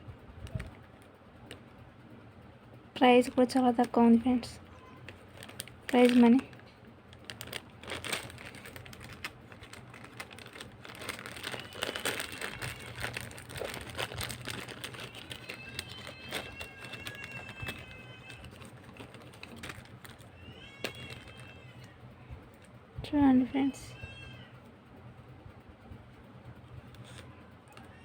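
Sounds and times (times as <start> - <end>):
packaging crinkling: 3.2 - 21.9.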